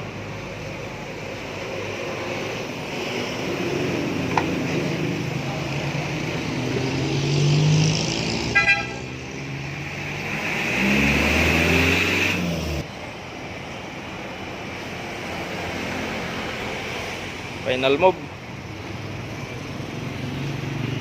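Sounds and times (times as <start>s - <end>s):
road traffic: 0.0s - 21.0s
vehicle horn toots: 8.5s - 9.1s.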